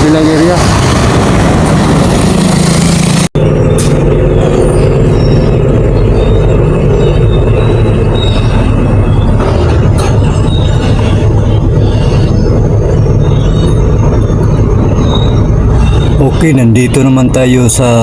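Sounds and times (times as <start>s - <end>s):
vehicle engine and road noise: 0.0s - 18.0s.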